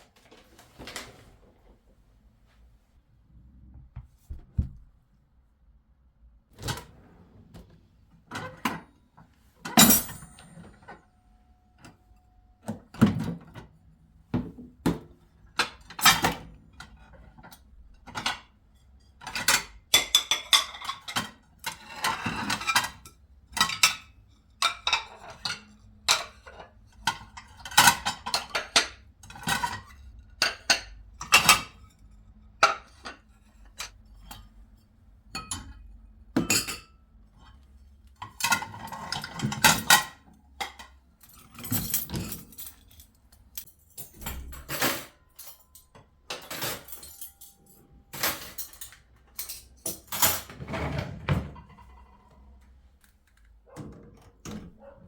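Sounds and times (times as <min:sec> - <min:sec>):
dishes and cutlery clattering: 0:15.6 - 0:34.6, 0:35.3 - 0:37.6, 0:38.2 - 0:52.1.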